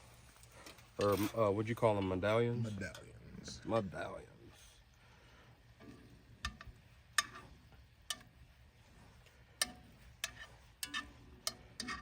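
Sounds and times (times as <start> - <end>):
metal utensils clicking against pan: 5.8 - 8.4, 9.6 - 12.0.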